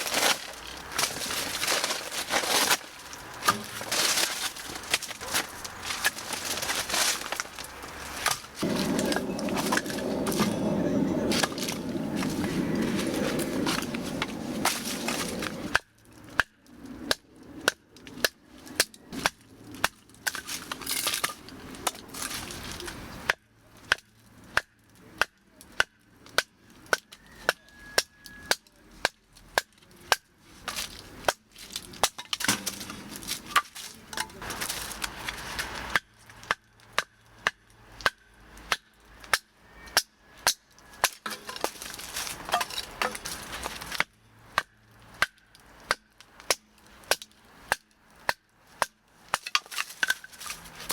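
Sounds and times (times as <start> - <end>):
firewood crackling and popping: 0.0 - 50.9.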